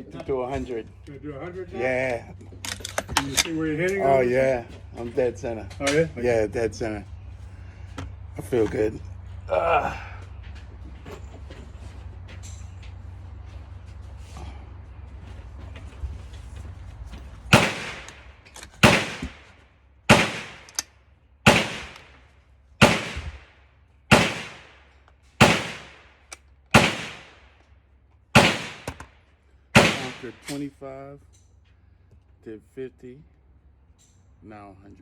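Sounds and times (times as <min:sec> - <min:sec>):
rifle shots with echo: 0:17.5 - 0:19.5, 0:20.1 - 0:20.8, 0:21.4 - 0:22.2, 0:22.8 - 0:27.5, 0:28.4 - 0:29.1, 0:29.8 - 0:30.6.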